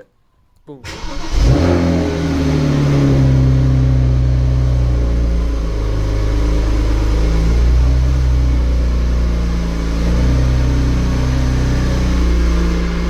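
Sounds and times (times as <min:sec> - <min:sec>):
car engine idling: 0:00.8 - 0:13.0.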